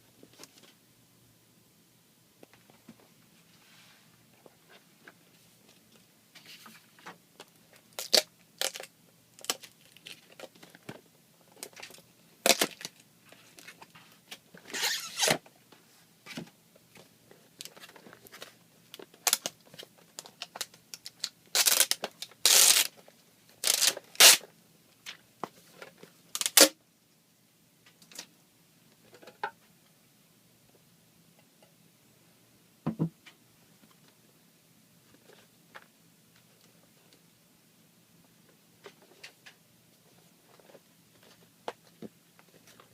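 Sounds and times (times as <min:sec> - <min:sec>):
packaging tearing and rustling: 0:08.0 - 0:10.5, 0:11.6 - 0:13.0, 0:20.5 - 0:23.0, 0:23.6 - 0:24.4, 0:26.4 - 0:26.7.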